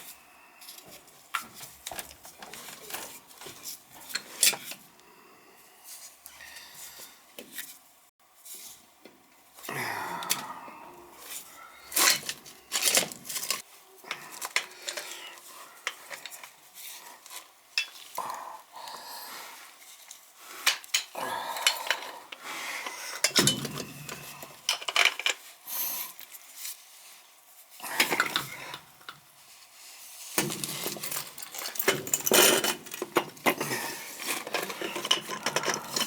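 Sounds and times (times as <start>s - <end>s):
metal tools and fittings clinking: 17.8s - 18.1s, 23.2s - 25.5s, 30.4s - 36.0s.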